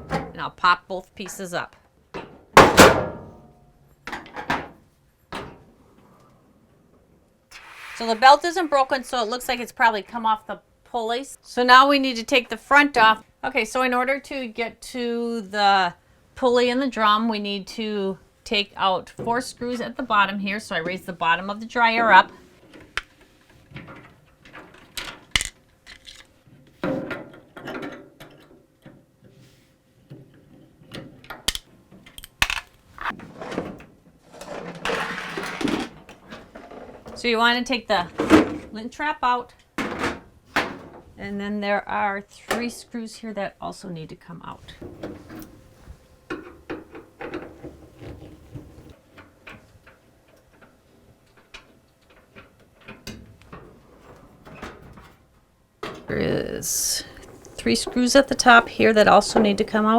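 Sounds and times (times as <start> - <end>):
sheet metal scraping and rattling: 7.5 - 9.1, 56.1 - 59.9.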